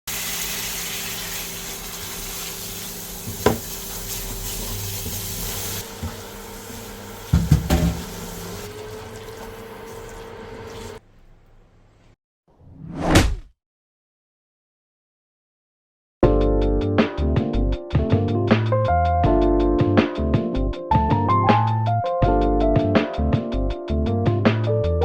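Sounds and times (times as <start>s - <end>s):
tap water filling vessel: 1.7s - 11.0s
clunks in sink: 3.3s - 3.7s, 7.2s - 8.3s.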